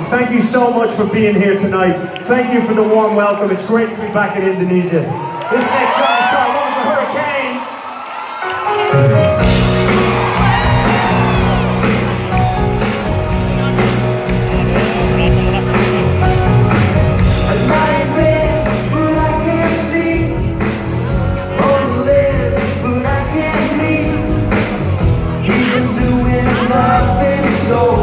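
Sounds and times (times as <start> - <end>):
live pop-rock band playing: 8.4 - 28.0
person singing lead: 17.3 - 24.7, 25.4 - 28.0.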